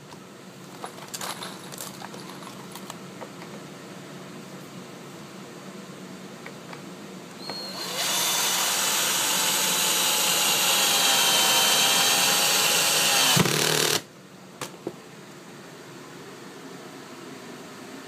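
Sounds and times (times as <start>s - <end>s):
electric drill whining: 7.4s - 14.0s.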